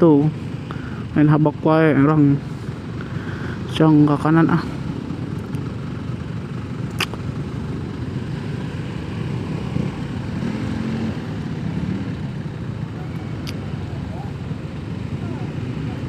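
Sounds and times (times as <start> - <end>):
two-stroke motorcycle engine: 0.0 - 16.0
sharp click: 6.9 - 7.2.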